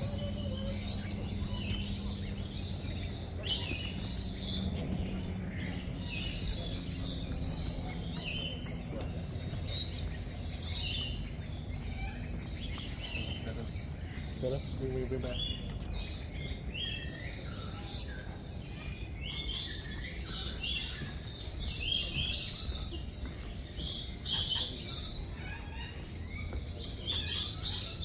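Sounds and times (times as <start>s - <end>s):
flock of parrots screeching: 0.0s - 4.8s, 23.8s - 28.0s.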